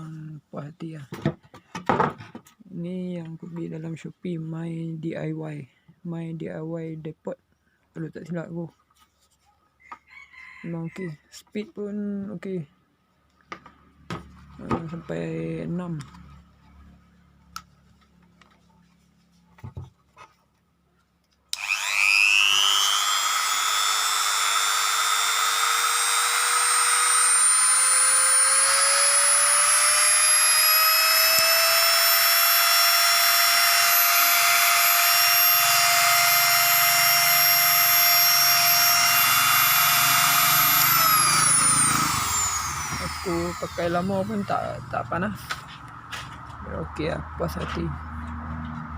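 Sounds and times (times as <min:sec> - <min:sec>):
die grinder whining: 0:21.5 - 0:46.2.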